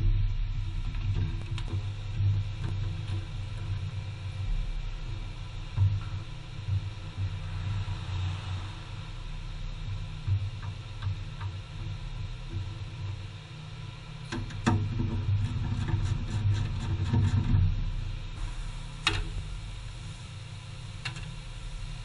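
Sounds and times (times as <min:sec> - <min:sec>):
car engine running: 0:00.0 - 0:16.3.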